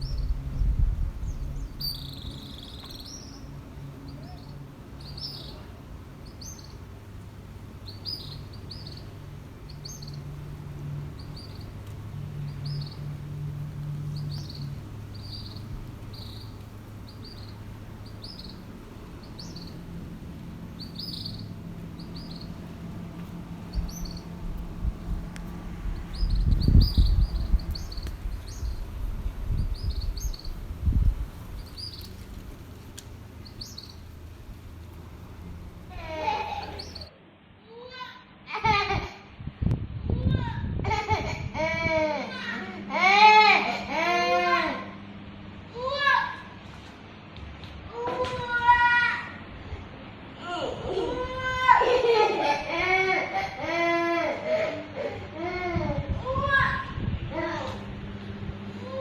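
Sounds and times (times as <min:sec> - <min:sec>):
loud low rumble: 0:00.0 - 0:03.4, 0:09.4 - 0:37.1
small birds chirping: 0:00.0 - 0:37.2
low steady hum: 0:00.0 - 0:37.6.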